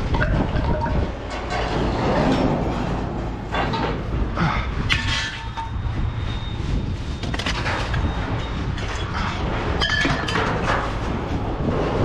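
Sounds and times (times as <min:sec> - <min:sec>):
low engine rumble: 0:00.0 - 0:12.0
metal clanks and rattles: 0:00.0 - 0:12.0
ringing metal clang: 0:09.8 - 0:10.6.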